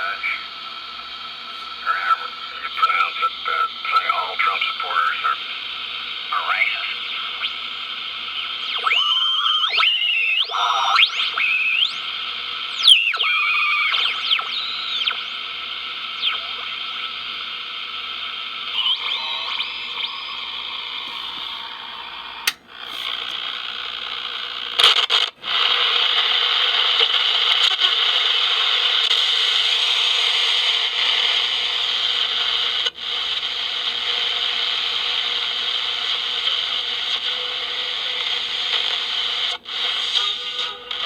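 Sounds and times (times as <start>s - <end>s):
radio static hiss: 0.0s - 41.0s
sharp clicks: 22.4s - 23.4s.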